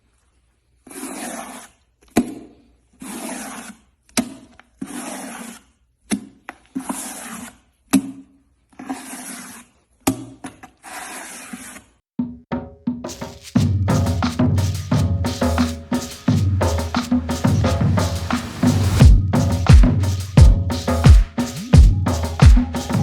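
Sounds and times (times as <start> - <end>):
rasping rubbing strokes: 13.1 - 23.0.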